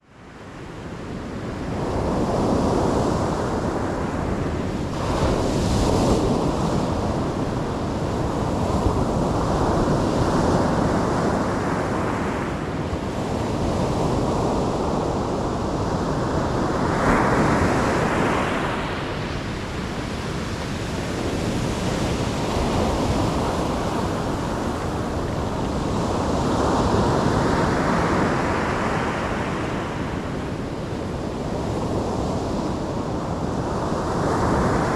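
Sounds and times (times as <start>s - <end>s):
ocean waves breaking: 16.8s - 30.2s.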